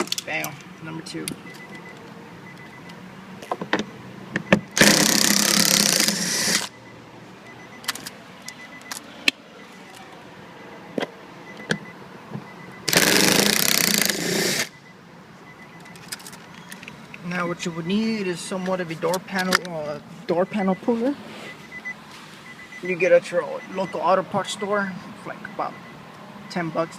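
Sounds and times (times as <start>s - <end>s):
impact driver hammering: 4.4s - 6.7s
tool handling clicks: 15.8s - 17.2s.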